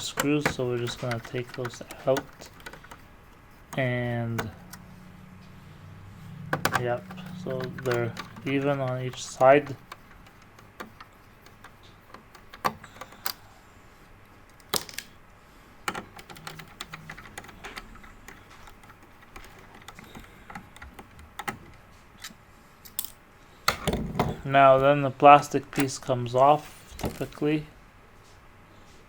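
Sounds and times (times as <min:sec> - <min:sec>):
screwdriver clicking on plastic screws: 0:00.0 - 0:04.9, 0:06.5 - 0:13.4, 0:15.9 - 0:21.8.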